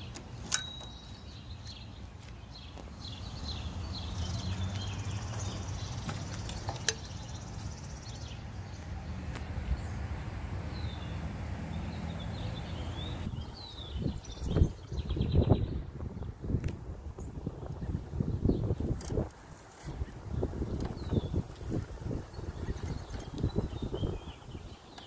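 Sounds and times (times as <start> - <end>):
birds chirping: 0.0 - 10.1, 10.7 - 16.4.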